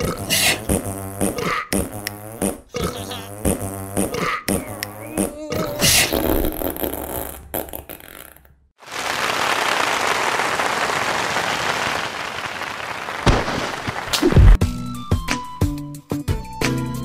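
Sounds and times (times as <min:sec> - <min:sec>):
fart sounds: 0:00.0 - 0:08.6.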